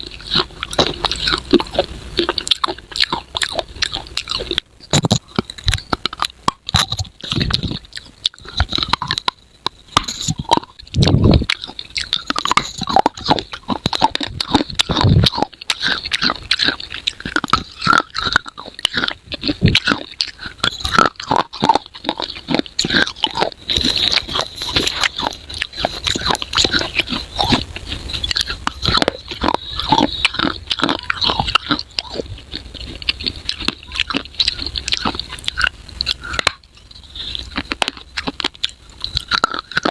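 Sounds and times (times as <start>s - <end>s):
person chewing crunchy clay: 0.0s - 39.9s.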